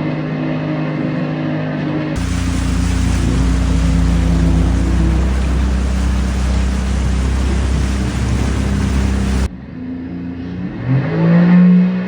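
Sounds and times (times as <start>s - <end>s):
rushing water: 2.2s - 9.5s
watercraft engine revving: 2.2s - 9.5s.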